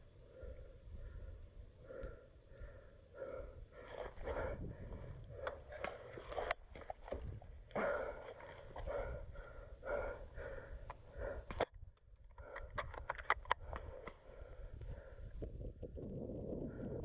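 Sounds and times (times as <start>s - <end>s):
person breathing through nose: 7.8s - 11.6s
sharp clicks: 10.9s - 14.2s.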